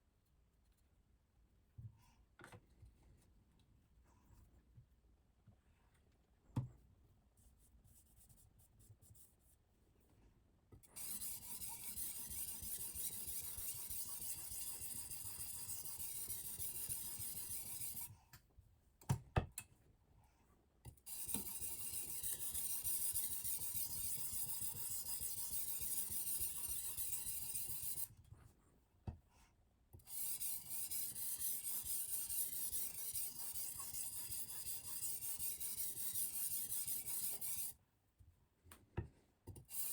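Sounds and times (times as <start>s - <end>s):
stone sharpening knife: 11.0s - 18.1s, 21.1s - 28.1s, 30.1s - 37.7s.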